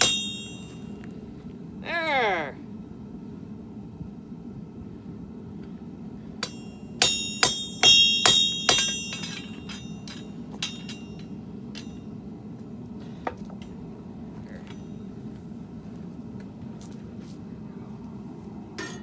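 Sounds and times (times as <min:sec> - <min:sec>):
hammer striking steel on anvil: 0:00.0 - 0:00.9, 0:06.4 - 0:12.2, 0:18.8 - 0:19.0.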